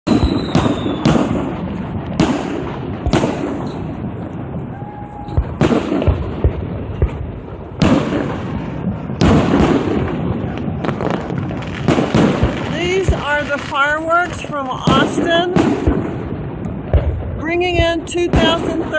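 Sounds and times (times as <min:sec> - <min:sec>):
fireworks crackling: 0:00.1 - 0:18.9.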